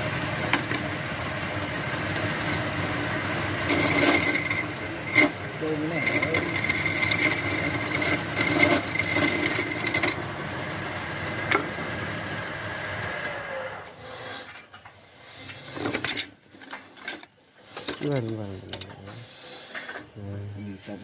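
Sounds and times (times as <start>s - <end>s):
wood lathe running: 0.0s - 13.9s
scraping on lathe: 2.1s - 10.6s.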